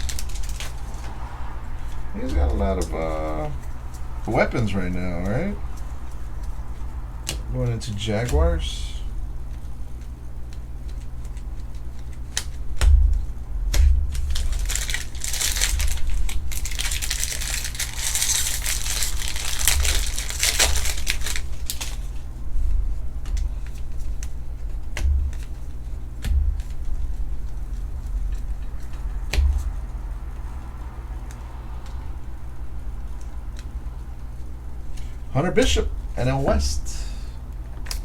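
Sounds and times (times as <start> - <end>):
foil wrapper crinkling: 0.0 - 1.2, 9.4 - 30.4.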